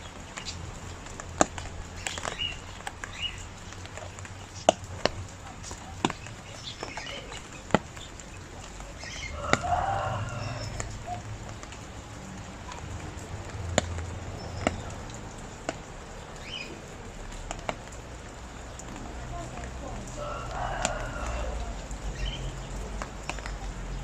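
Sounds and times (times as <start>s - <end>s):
bird calling: 0.0s - 11.8s
heavy drips tapping: 0.0s - 24.0s
rain falling: 0.0s - 24.0s.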